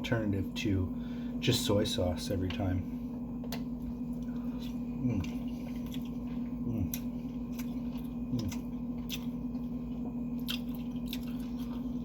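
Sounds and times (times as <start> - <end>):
steady low hum: 0.0 - 12.0
mouth eating sounds: 4.5 - 9.6.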